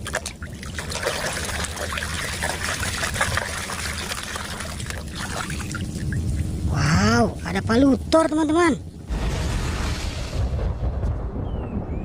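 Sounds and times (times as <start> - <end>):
small splashes: 0.0 - 6.4
water pouring and trickling: 0.0 - 6.7.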